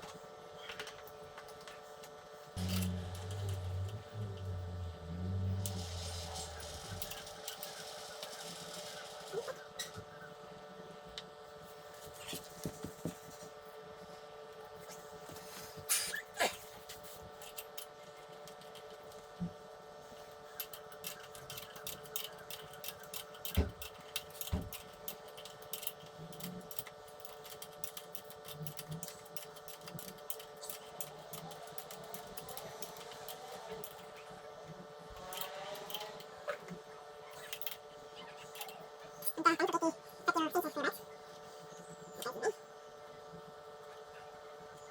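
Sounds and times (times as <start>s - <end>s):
background hum: 0.0s - 44.9s.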